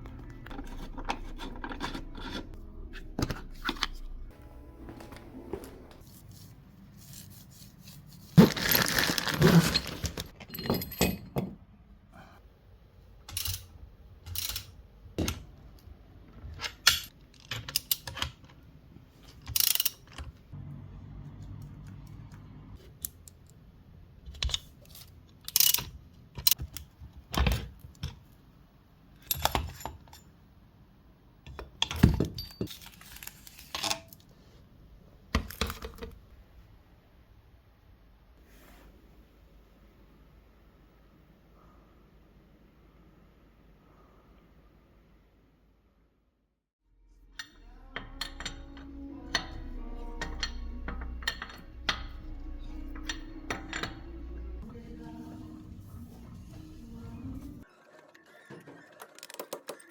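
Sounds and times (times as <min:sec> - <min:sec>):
metal tools clinking and clanking: 0:08.4 - 0:11.6, 0:13.3 - 0:13.7, 0:31.9 - 0:33.0, 0:47.4 - 0:54.7.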